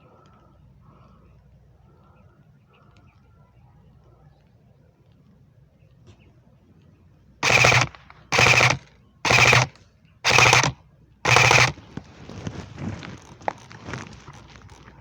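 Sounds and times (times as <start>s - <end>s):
airsoft gun full-auto bursts: 7.4s - 11.9s.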